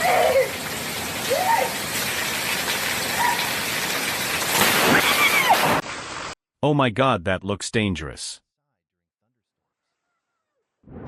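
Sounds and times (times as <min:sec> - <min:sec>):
rushing water: 0:00.0 - 0:06.4.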